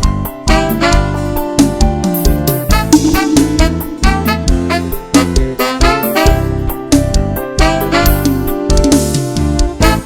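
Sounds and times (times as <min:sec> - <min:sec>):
band playing over a beat: 0:00.0 - 0:10.0
strong bass line: 0:02.4 - 0:07.2.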